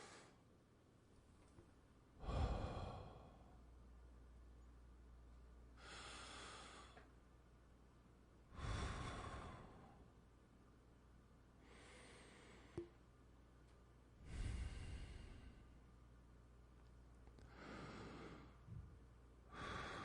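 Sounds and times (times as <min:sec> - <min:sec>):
airy inhale: 0:00.0 - 0:00.4, 0:14.2 - 0:15.8, 0:17.5 - 0:18.6, 0:19.5 - 0:20.0
heavy exhale buffeting mic: 0:02.2 - 0:03.6, 0:08.5 - 0:10.0, 0:14.2 - 0:15.7.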